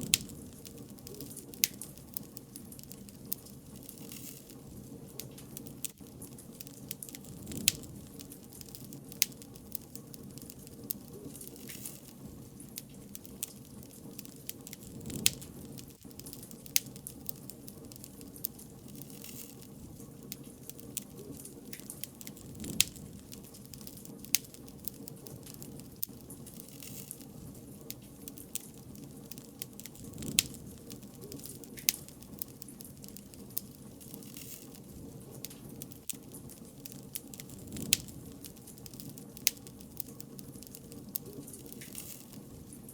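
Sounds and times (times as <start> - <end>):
wood fire crackling: 0.0 - 42.9.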